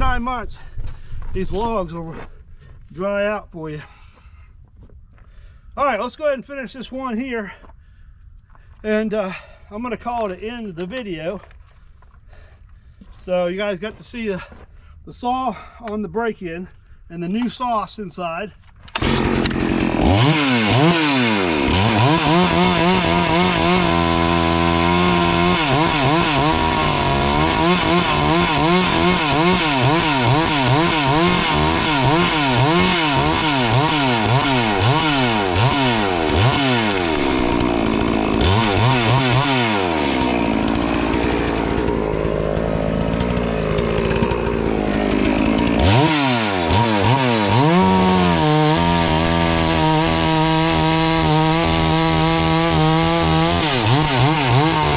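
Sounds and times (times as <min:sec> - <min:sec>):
chainsaw cutting log: 0:18.9 - 0:54.9.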